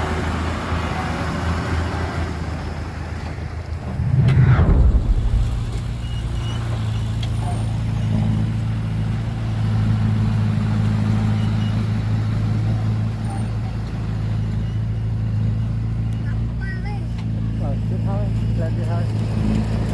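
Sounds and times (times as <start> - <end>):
diesel engine humming: 0.0 - 19.9
loud falling-pitch burst: 3.9 - 6.8.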